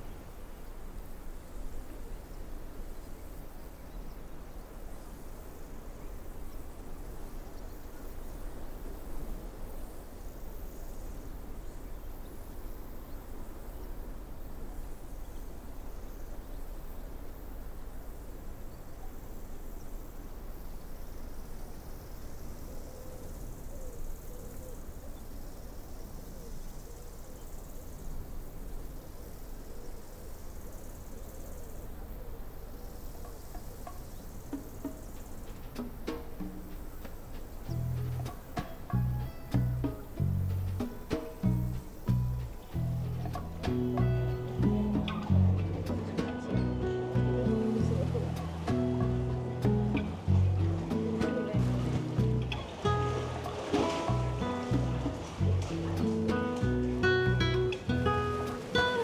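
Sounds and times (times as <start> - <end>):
insects calling: 0.0 - 59.0
low background rumble: 37.5 - 58.6.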